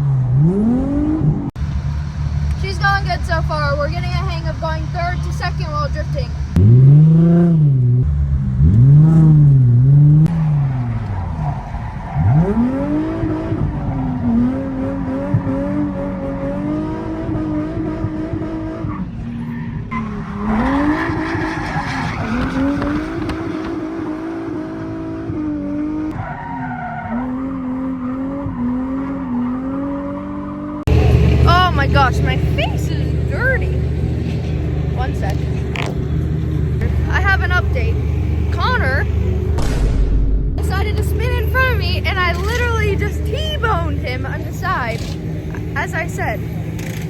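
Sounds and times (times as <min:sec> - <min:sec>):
car engine revving hard: 0:00.0 - 0:01.6, 0:02.6 - 0:19.1, 0:19.9 - 0:39.6
tyres squealing: 0:19.4 - 0:24.4.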